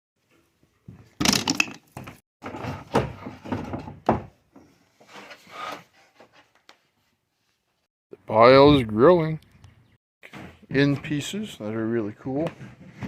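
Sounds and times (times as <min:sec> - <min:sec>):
wooden parts thudding and clattering: 0:00.9 - 0:04.7.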